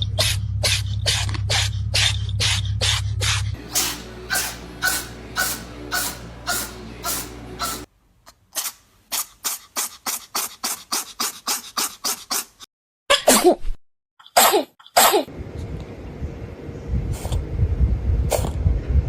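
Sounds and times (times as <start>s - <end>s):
cat sneezing: 14.4s - 15.3s.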